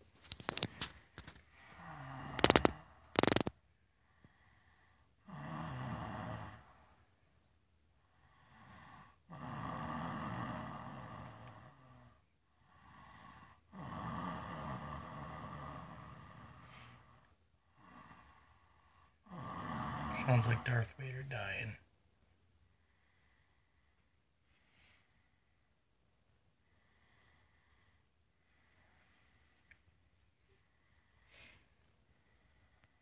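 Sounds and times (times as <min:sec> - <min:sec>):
quiet breaths: 0:00.0 - 0:33.0
man snoring: 0:01.7 - 0:03.5, 0:05.2 - 0:06.8, 0:08.2 - 0:21.6.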